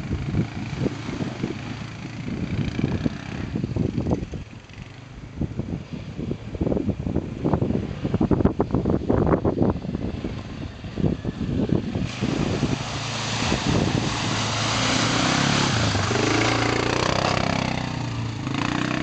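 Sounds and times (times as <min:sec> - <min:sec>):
atv engine revving: 0:00.0 - 0:05.1, 0:10.1 - 0:19.0.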